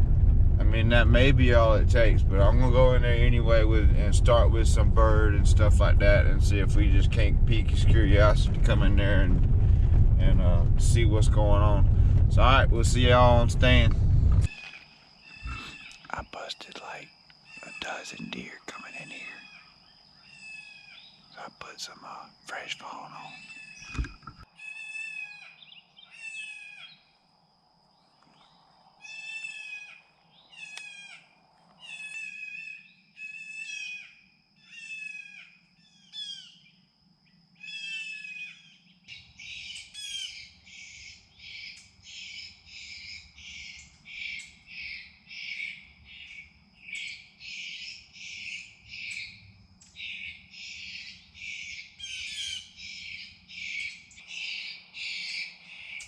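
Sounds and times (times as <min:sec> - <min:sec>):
faint low rumble: 0:00.0 - 0:14.6.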